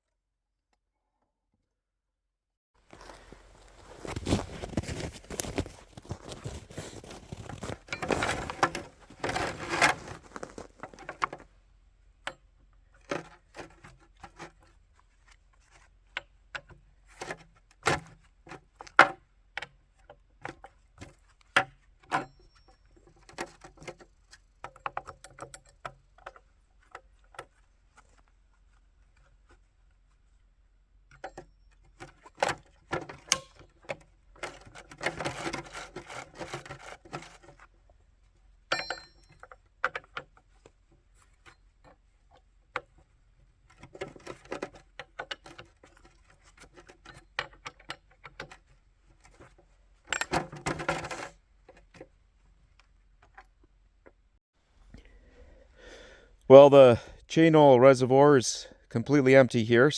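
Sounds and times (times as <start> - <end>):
rustling and crunching: 2.8 - 11.6.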